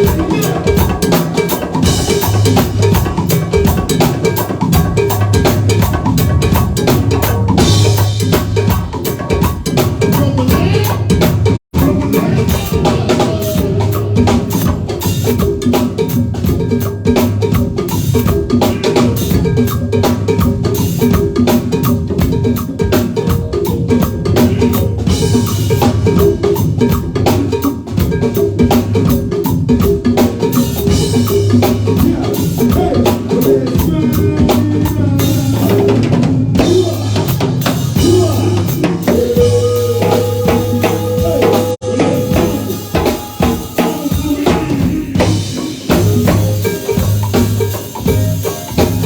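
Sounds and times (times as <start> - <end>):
drum kit: 0.0 - 49.0
live band playing: 0.0 - 49.0
bass line: 4.7 - 9.0, 30.9 - 49.0.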